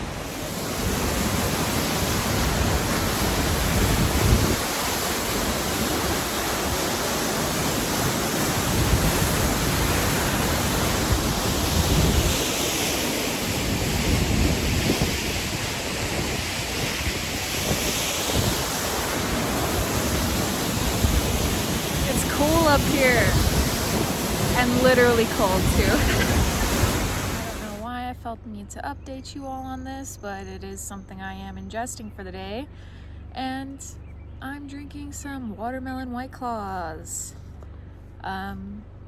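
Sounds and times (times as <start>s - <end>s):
fast-flowing water rushing: 0.0s - 27.8s
wind buffeting microphone: 0.0s - 27.8s.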